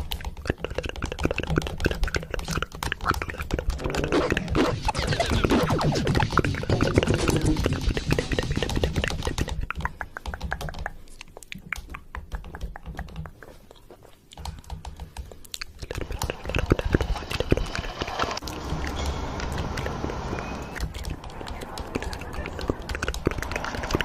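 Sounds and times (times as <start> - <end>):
sharp clicks and clatter: 0.0 - 10.9, 20.7 - 24.0.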